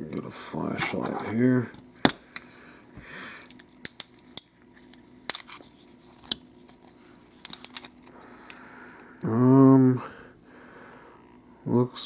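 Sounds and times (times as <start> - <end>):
metallic clicks of small lock parts: 3.5 - 4.5, 5.2 - 6.5, 7.4 - 8.2.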